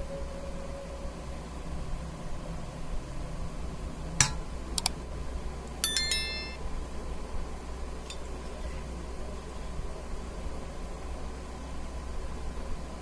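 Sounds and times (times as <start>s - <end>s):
ringing metallic clink: 5.8s - 6.6s.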